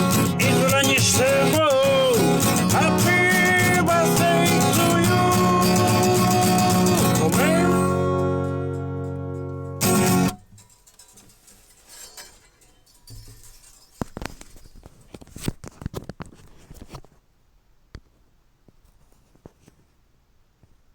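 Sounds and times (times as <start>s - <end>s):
guitar chord strummed: 0.0s - 10.4s.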